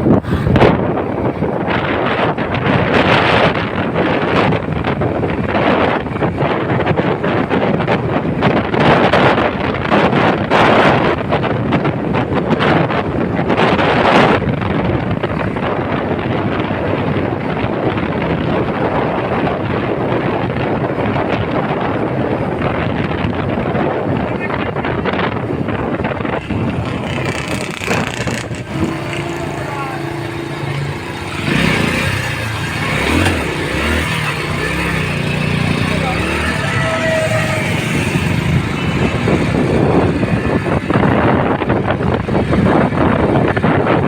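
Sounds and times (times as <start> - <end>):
wind buffeting microphone: 0.0 - 44.0
vehicle engine running: 12.2 - 44.0.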